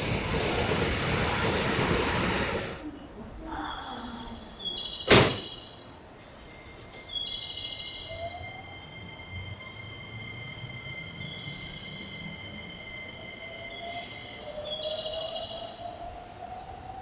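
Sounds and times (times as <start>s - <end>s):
train moving with whine: 0.0s - 17.0s
sharp loud knock: 5.1s - 5.6s.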